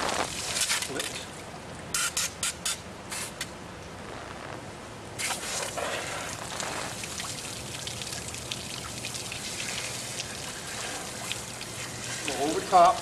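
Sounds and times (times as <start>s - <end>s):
pressurized water spraying from pipe: 5.2s - 7.9s, 9.0s - 13.0s.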